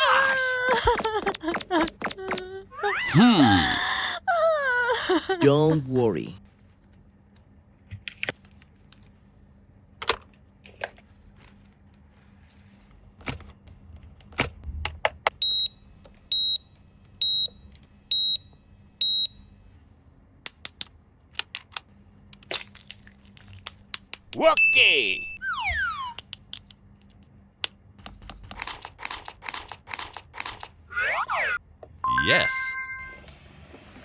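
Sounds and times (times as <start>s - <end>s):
high electronic toy beeps: 24.6s - 26.2s.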